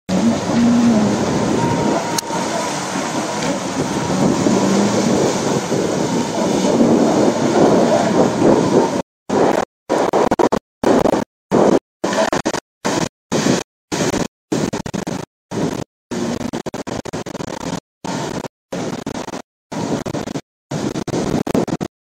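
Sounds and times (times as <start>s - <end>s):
low wavering hum: 0.1s - 9.0s
rushing water: 0.1s - 14.7s
jet ski engines rumbling: 0.1s - 16.5s.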